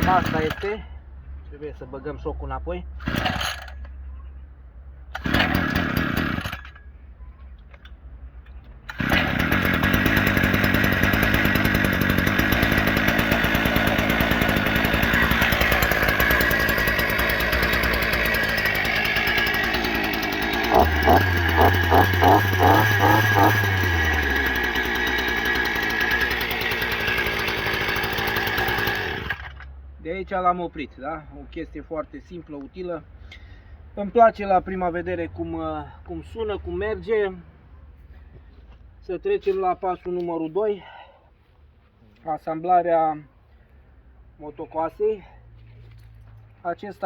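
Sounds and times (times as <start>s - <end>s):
two-stroke engine running and revving: 0.0s - 0.6s, 3.0s - 3.7s, 5.2s - 6.6s, 8.9s - 29.7s.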